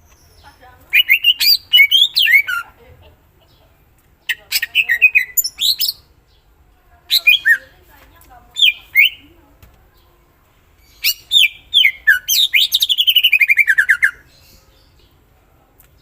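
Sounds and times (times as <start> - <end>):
bird singing rapid chirps: 0.1 - 2.7, 4.2 - 6.5, 7.1 - 7.8, 8.5 - 9.3, 10.8 - 15.2.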